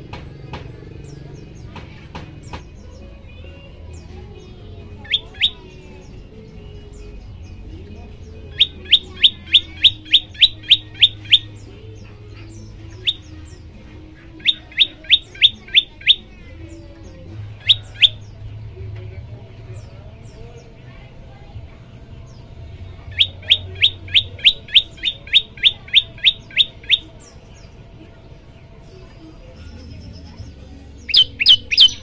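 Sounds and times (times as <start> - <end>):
faint bird chirps: 5.0 - 6.2, 8.5 - 13.6, 14.4 - 18.4, 23.0 - 27.8, 29.1 - 32.0
bird calling sharp rising notes: 8.6 - 11.6, 31.1 - 32.0.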